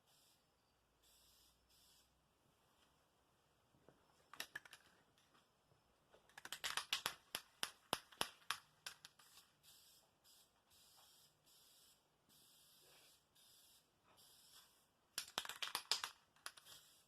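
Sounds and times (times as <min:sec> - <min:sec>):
sharp irregular clicks and taps: 0:06.2 - 0:09.4, 0:15.2 - 0:16.7.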